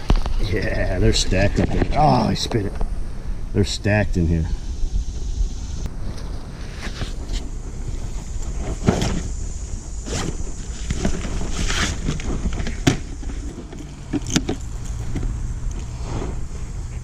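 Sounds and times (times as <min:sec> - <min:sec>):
wind rumbling on microphone: 0:00.0 - 0:17.0
clicks and rustles: 0:10.0 - 0:16.7.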